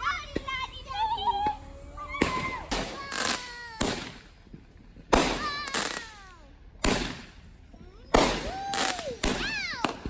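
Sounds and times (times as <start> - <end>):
fireworks bangs: 0.2 - 10.0
fireworks whistling downward: 0.5 - 4.6, 5.2 - 6.2, 8.0 - 10.0.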